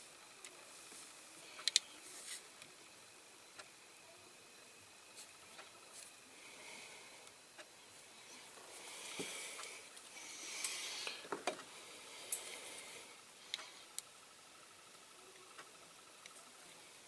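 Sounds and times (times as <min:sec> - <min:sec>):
rustling and scraping: 0:02.0 - 0:02.5.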